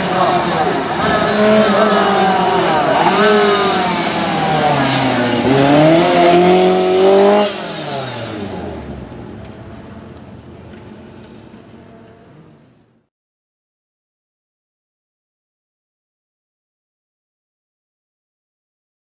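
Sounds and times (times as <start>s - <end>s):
rally car engine at full throttle: 0.0s - 13.1s.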